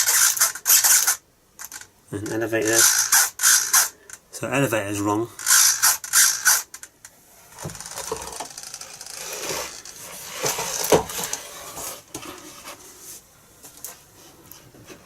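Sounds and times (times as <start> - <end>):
servo gear buzz: 0.0 - 1.8, 2.6 - 3.9, 5.4 - 6.7.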